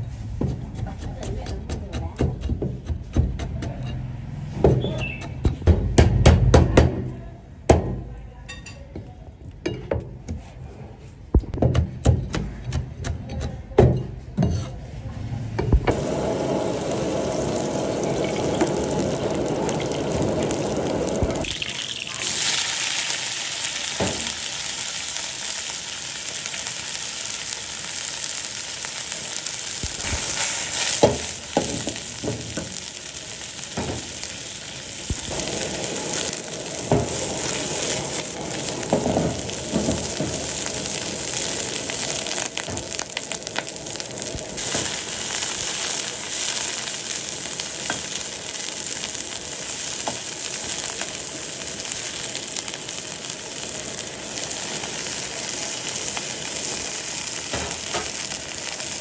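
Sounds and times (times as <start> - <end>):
food sizzling in a pan: 15.9 - 59.0.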